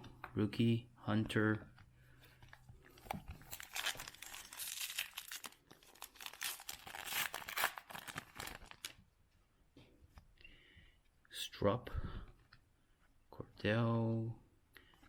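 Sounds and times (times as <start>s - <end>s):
foil wrapper crinkling and tearing: 3.4s - 9.0s.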